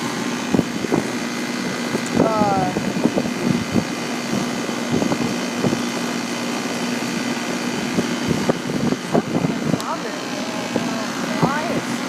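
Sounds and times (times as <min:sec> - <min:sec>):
air conditioner compressor hum: 0:00.0 - 0:12.0
condenser fan whoosh: 0:00.0 - 0:12.0.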